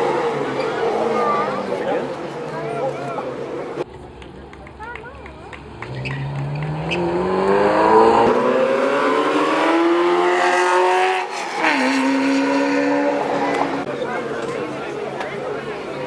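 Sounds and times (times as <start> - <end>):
car engine accelerating hard: 5.7 - 13.9.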